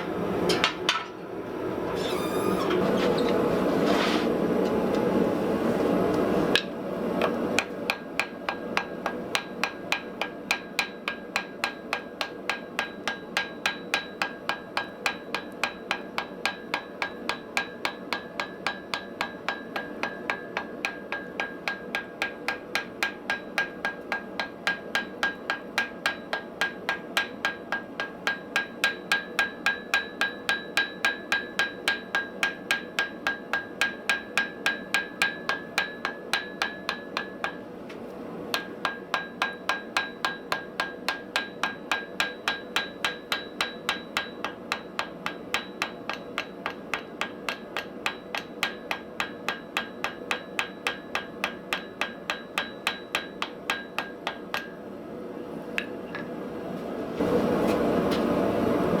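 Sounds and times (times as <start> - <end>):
hammer ringing on an anvil: 7.9 - 37.7, 38.5 - 54.8.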